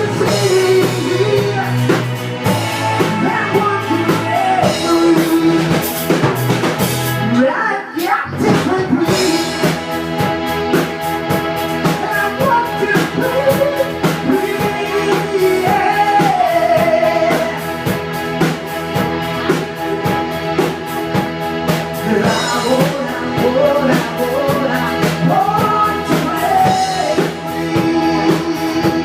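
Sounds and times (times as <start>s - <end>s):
person singing: 0.0s - 6.5s, 7.2s - 10.2s, 11.8s - 18.0s, 21.8s - 29.0s
drum kit: 0.0s - 29.0s
guitar: 0.0s - 29.0s.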